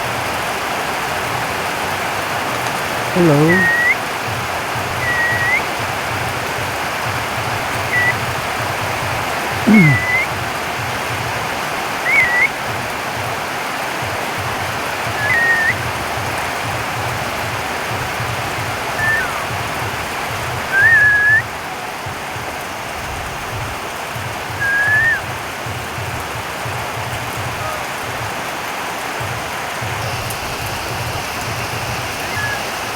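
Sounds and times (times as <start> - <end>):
rain falling: 0.0 - 32.9
bird whistled calls: 3.2 - 4.0, 4.9 - 5.8, 7.8 - 8.2, 9.7 - 10.4, 12.0 - 12.6, 15.1 - 15.9, 19.0 - 19.7, 20.7 - 21.5, 24.6 - 25.3, 32.0 - 32.9.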